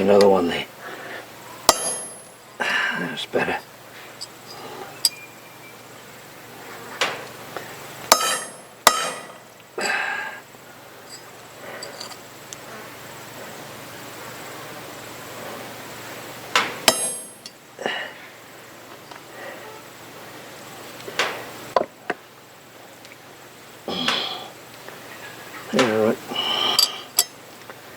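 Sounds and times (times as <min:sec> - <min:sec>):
hammer striking metal spoon: 0:01.7 - 0:02.2, 0:08.1 - 0:09.4, 0:16.9 - 0:17.5.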